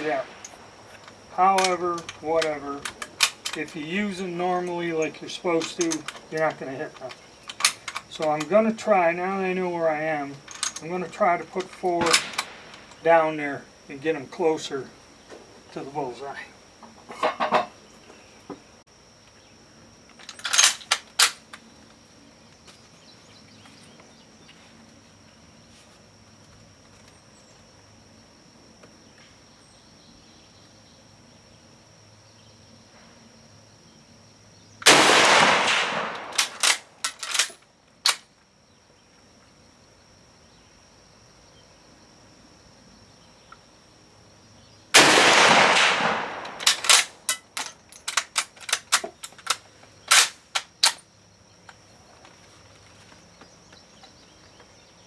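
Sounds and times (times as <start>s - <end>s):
rifle shots: 12.0s - 12.9s, 34.8s - 36.9s, 45.0s - 47.3s
rifle bolt clacking: 35.6s - 37.5s, 45.8s - 51.0s.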